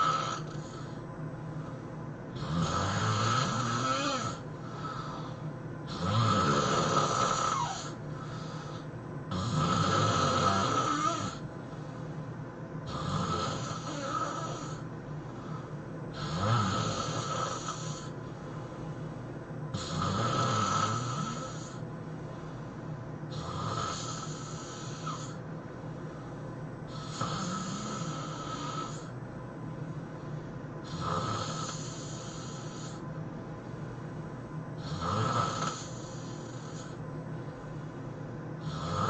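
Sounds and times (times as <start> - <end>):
man snoring: 0.0 - 1.0, 2.3 - 11.4, 12.8 - 14.8, 16.1 - 18.2, 19.7 - 21.8, 23.3 - 25.4, 26.9 - 29.1, 30.8 - 33.0, 34.8 - 37.0, 38.6 - 39.0
quiet breaths: 0.0 - 39.0.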